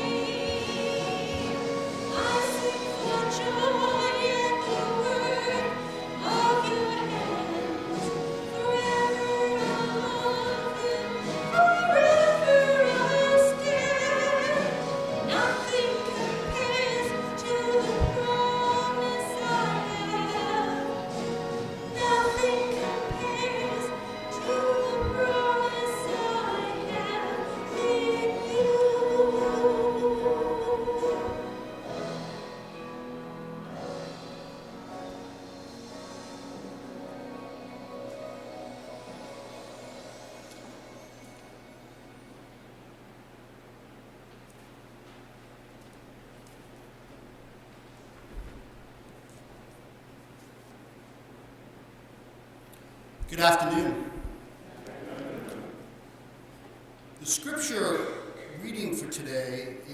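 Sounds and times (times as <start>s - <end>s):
person singing with vibrato: 0.0s - 32.8s.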